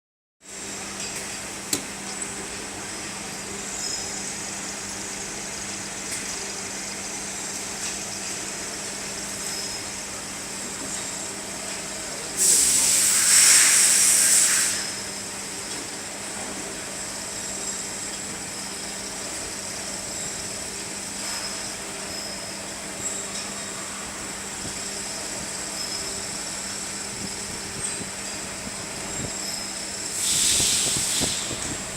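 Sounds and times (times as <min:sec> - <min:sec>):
loud hiss: 0:12.4 - 0:15.1, 0:30.0 - 0:31.9.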